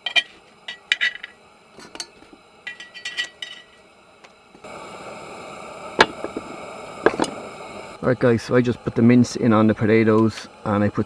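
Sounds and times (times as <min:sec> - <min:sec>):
metal utensils clinking on cookware: 0:00.0 - 0:03.8
steady hiss: 0:00.0 - 0:11.0.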